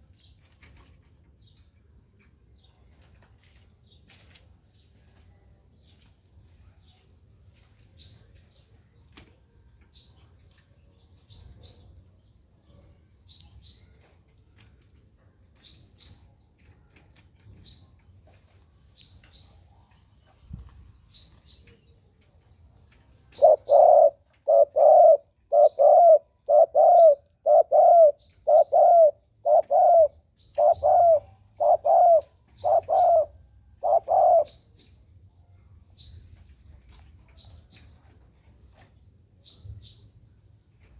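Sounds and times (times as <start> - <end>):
dove cooing low notes: 23.3 - 34.7
bird high double chirps: 26.8 - 34.6.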